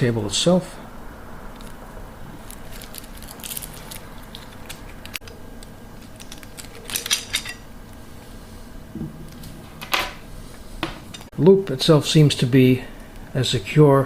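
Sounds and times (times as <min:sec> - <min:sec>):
steel cable clinking and rattling: 0:06.0 - 0:07.6.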